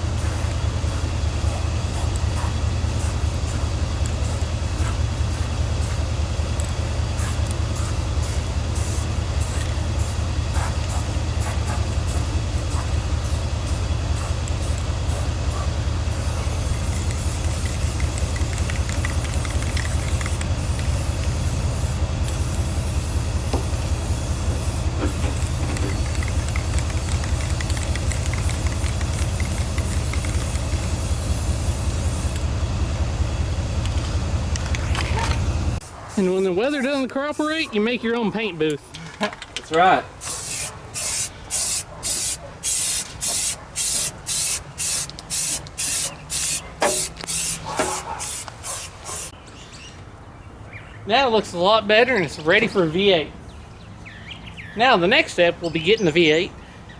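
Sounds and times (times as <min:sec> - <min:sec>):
spray paint hissing: 0:00.0 - 0:32.5, 0:35.8 - 0:37.8, 0:40.2 - 0:49.4
motor pulsing: 0:00.0 - 0:35.9.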